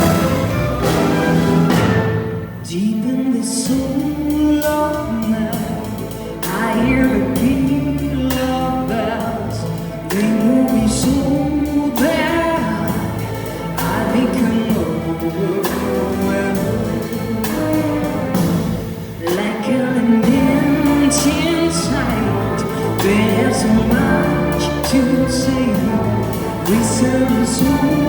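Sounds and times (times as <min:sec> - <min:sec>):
jazz orchestra playing blues: 0:00.0 - 0:28.0
person singing: 0:02.6 - 0:13.2, 0:19.2 - 0:28.0.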